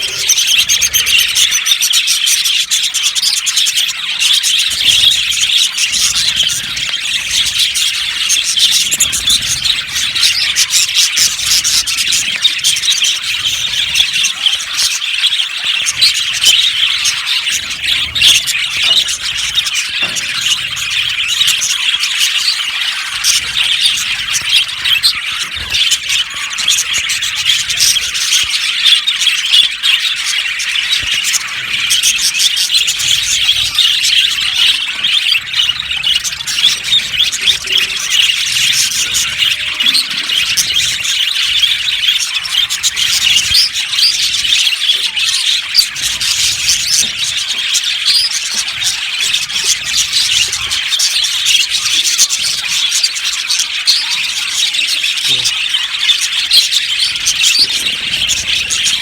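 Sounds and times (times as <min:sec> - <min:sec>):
budgerigars chirping: 0:00.0 - 0:59.0.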